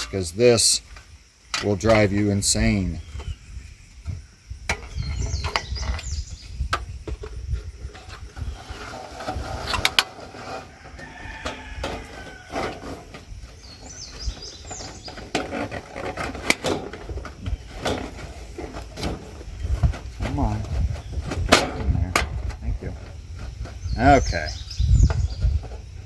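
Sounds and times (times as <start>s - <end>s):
plastic panels clicking: 11.4s - 20.2s
steady low rumble: 16.9s - 26.0s.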